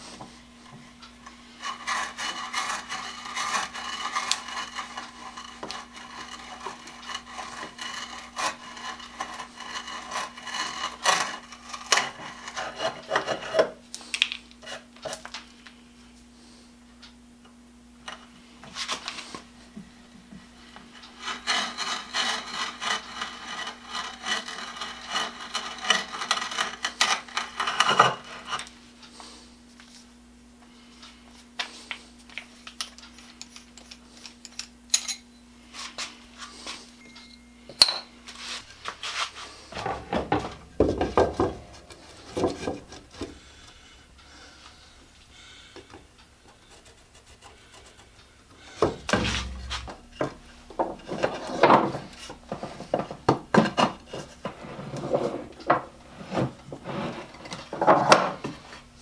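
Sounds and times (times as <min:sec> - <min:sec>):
hand saw cutting wood: 0:01.0 - 0:13.8, 0:20.7 - 0:28.6, 0:46.5 - 0:50.3.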